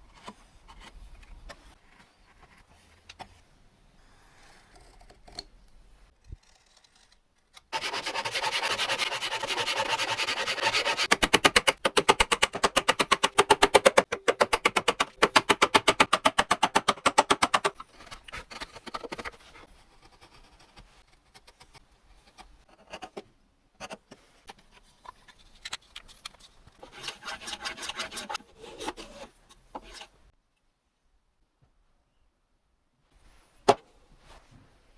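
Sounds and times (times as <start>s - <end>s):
rapid even tool strokes: 7.7s - 17.7s
hand tool rubbing wood: 7.8s - 11.2s.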